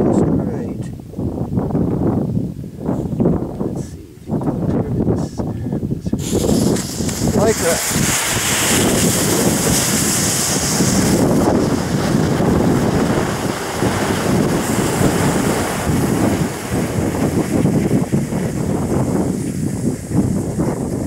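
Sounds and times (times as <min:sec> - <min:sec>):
firework smoke balls hissing: 0:06.1 - 0:21.0.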